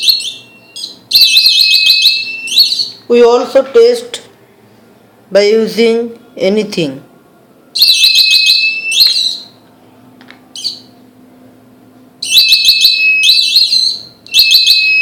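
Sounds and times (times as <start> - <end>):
warbling alarm buzzer: 0.0 - 2.8, 7.8 - 9.5, 12.2 - 15.0.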